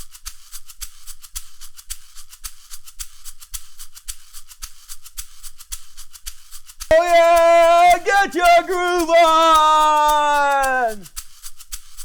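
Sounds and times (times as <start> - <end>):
drum beat: 7.0 - 10.8.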